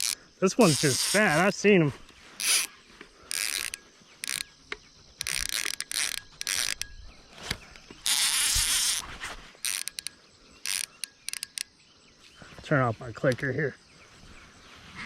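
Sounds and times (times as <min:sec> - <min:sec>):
fishing reel clicker ratcheting: 0:00.0 - 0:01.4, 0:02.4 - 0:02.7, 0:03.3 - 0:04.5, 0:05.2 - 0:07.0, 0:08.0 - 0:09.0, 0:09.6 - 0:11.7.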